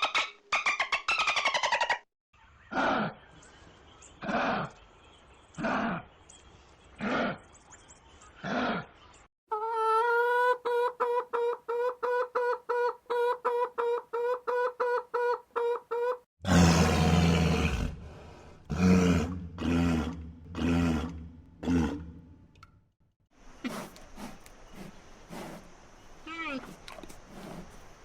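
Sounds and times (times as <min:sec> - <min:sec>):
animal deep roar: 0:16.4 - 0:22.4.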